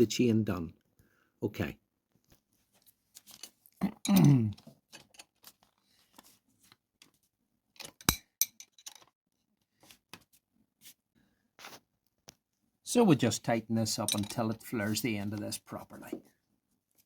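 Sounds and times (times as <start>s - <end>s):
person grunting: 3.8s - 4.6s
chain tool metal clicks: 7.8s - 9.1s, 14.1s - 14.6s.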